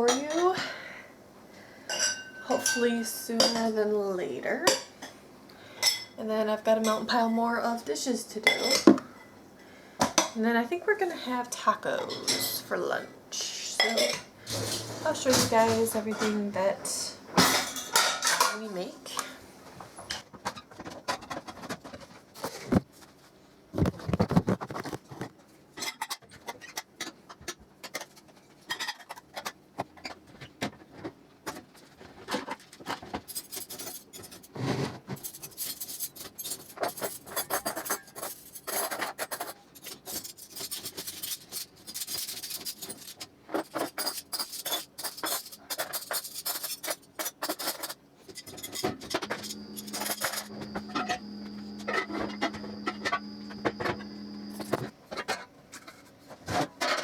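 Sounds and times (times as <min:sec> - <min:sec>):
dishes and cutlery clattering: 0:01.9 - 0:03.8, 0:17.4 - 0:18.7, 0:25.8 - 0:29.6, 0:32.3 - 0:51.2, 0:51.8 - 0:57.0.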